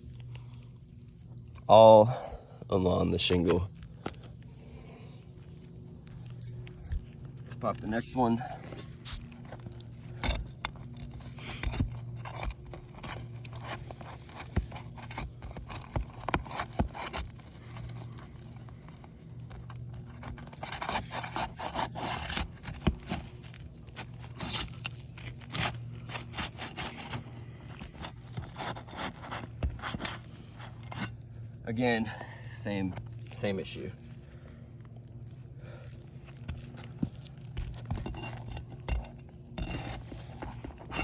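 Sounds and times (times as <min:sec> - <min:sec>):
roof shingle being pried up: 0:06.5 - 0:31.5, 0:35.6 - 0:41.0
scraping and sharp clicks: 0:08.6 - 0:31.2, 0:36.2 - 0:41.0.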